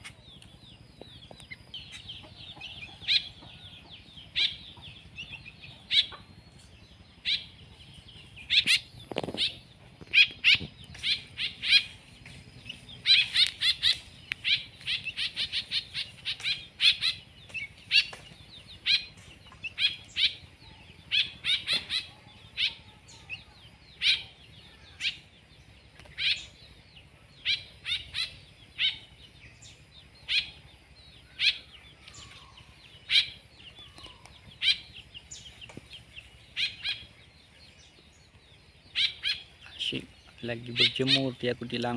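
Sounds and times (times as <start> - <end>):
songbirds chirping: 0.0 - 41.9.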